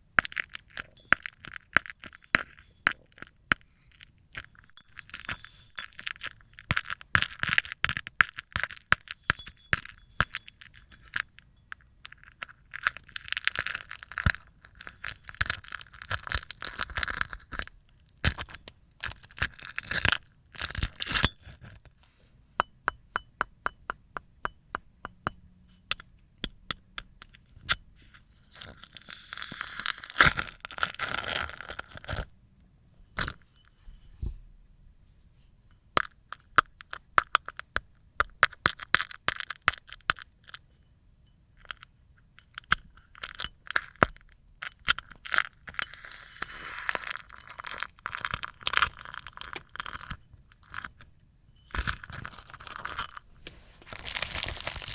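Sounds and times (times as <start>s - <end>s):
dried slime peeling and crackling: 12.1s - 21.2s, 28.4s - 32.3s, 44.9s - 50.9s, 51.7s - 54.9s.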